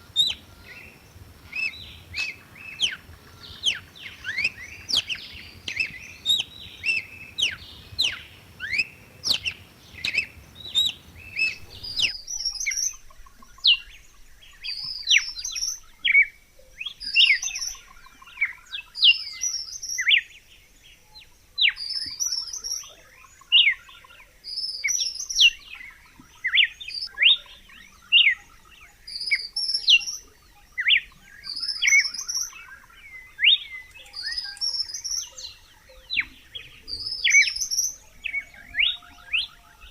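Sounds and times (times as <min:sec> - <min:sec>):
bird singing falling whistles: 0:00.0 - 0:12.7
low background hiss: 0:00.0 - 0:17.9.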